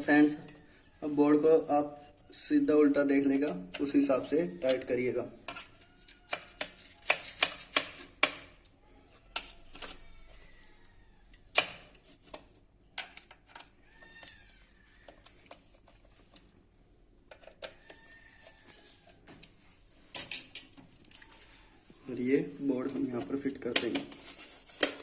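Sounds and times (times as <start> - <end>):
faint squeaks: 8.8 - 11.4.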